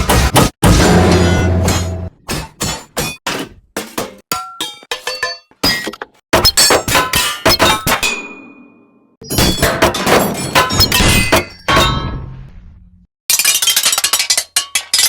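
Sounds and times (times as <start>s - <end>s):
sharp metal clanking strikes: 0.0s - 3.2s, 9.2s - 12.4s.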